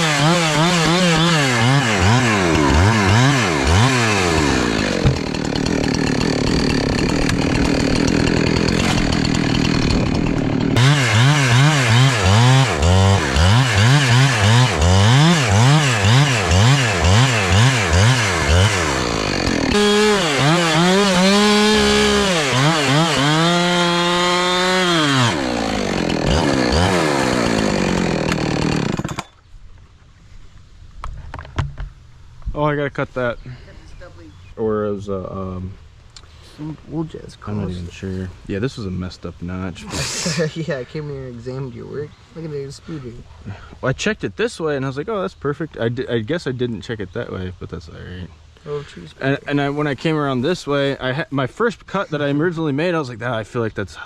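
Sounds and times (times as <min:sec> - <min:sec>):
chainsaw cutting wood: 0:00.0 - 0:29.4.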